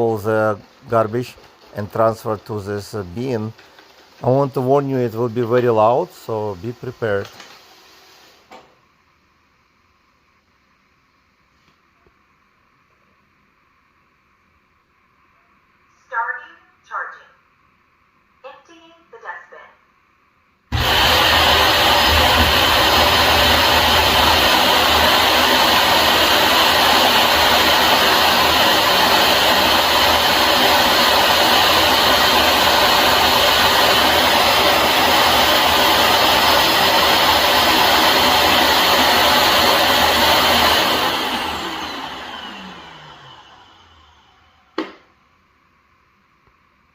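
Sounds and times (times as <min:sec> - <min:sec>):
suction motor running: 0:20.7 - 0:44.6.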